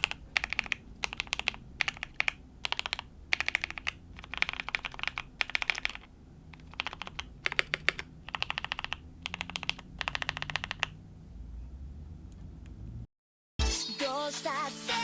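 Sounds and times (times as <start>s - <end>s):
mechanical keyboard typing: 0.0s - 11.0s.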